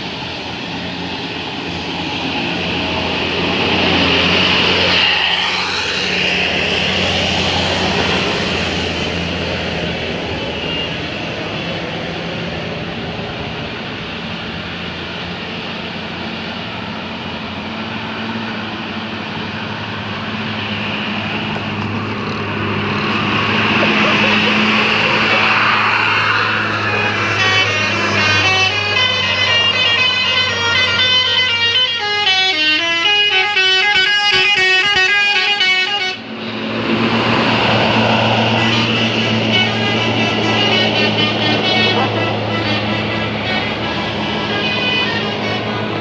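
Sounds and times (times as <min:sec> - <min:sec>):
heavy vehicle engine drone: 0:00.0 - 0:46.0.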